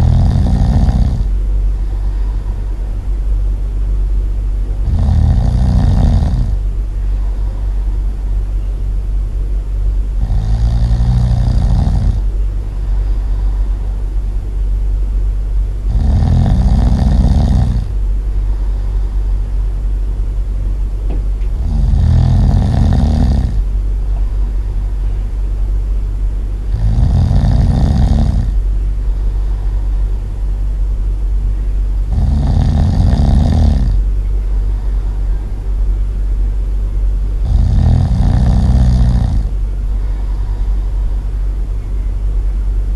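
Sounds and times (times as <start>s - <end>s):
loud snoring: 0.0s - 1.3s, 4.8s - 6.6s, 10.2s - 12.3s, 15.9s - 18.9s, 21.6s - 23.7s, 26.7s - 28.6s, 32.0s - 34.0s, 37.4s - 40.6s
steady low hum: 0.0s - 42.9s.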